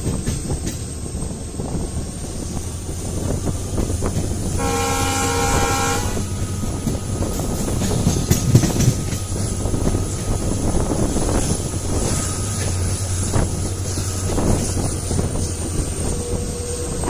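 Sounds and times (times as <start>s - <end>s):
diesel engine humming: 0.0s - 17.0s
train rumbling on track: 0.0s - 17.0s
locomotive chord horn: 4.5s - 6.7s.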